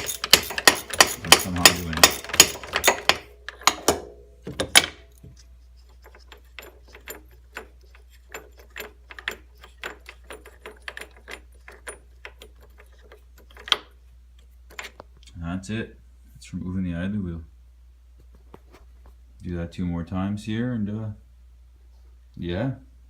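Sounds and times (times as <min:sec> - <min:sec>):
hand ratchet clicking: 0:00.0 - 0:03.9
metal knocks: 0:00.0 - 0:05.0.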